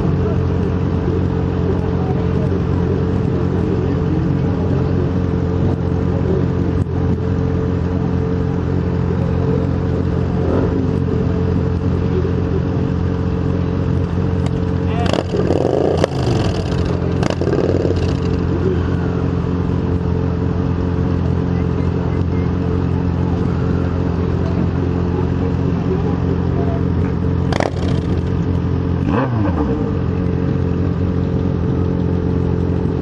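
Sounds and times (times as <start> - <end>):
motorcycle engine running steadily: 0.0 - 33.0
engine winding down whine: 13.9 - 20.0.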